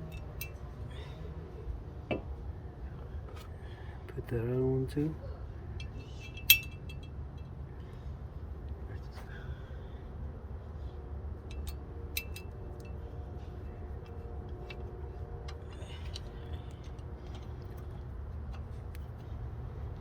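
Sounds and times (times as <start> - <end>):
steady low rumble: 5.4 - 20.0.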